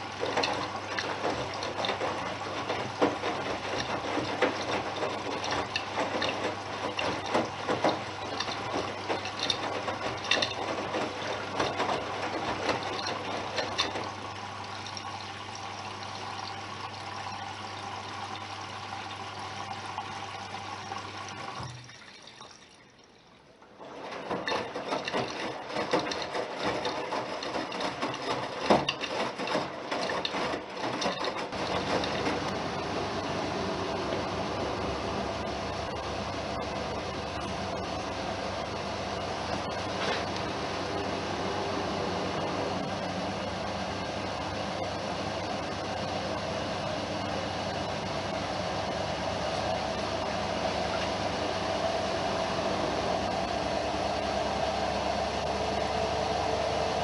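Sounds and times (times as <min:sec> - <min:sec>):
knocks in washing drum: 0:00.0 - 0:14.2, 0:24.1 - 0:32.6
washing machine low hum: 0:00.0 - 0:57.0
water sloshing in washing drum: 0:00.0 - 0:57.0.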